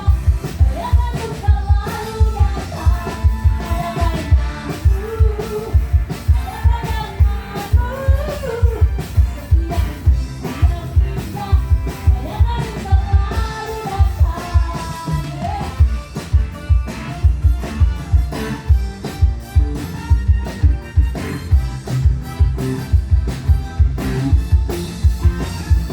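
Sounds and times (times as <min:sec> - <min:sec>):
woman singing: 0:00.0 - 0:16.0
heavy drum beat: 0:00.0 - 0:25.9
live band playing: 0:00.0 - 0:25.9.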